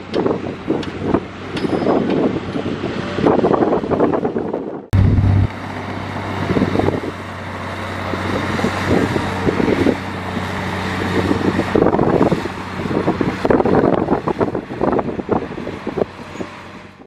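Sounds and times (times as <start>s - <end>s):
diesel machinery engine hum: 4.9s - 17.0s.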